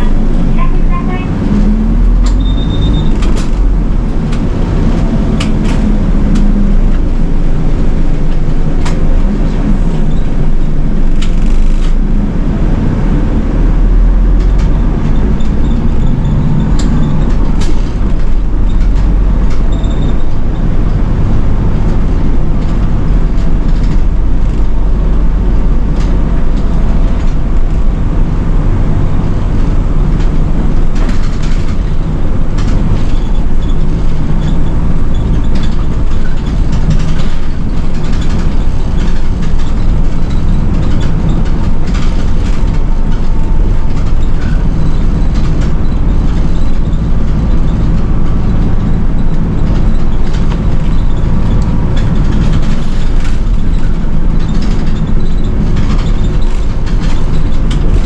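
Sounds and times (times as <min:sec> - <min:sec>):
bus diesel engine running: 0:00.0 - 0:58.0
road noise: 0:00.0 - 0:58.0
small clicks and rattles: 0:30.2 - 0:58.0.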